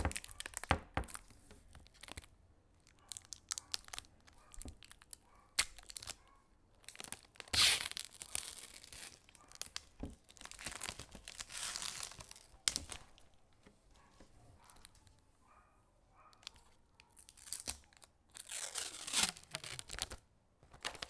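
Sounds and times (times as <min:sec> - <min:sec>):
packaging tearing and crinkling: 0:00.0 - 0:02.3, 0:02.9 - 0:06.2, 0:06.8 - 0:13.3, 0:16.4 - 0:21.0.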